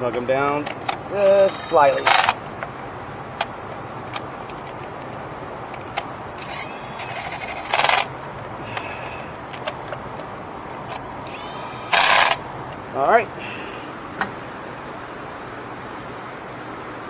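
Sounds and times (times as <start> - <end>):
rapid ratchet clicks: 0.0 - 2.7, 3.4 - 12.5
loud rasping burst: 0.7 - 2.6, 5.9 - 9.9, 10.8 - 12.7.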